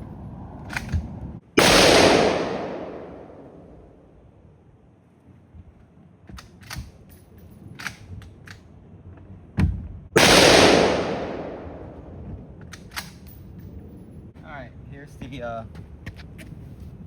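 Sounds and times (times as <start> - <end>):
rifle shot: 1.6 - 3.7, 10.2 - 12.1.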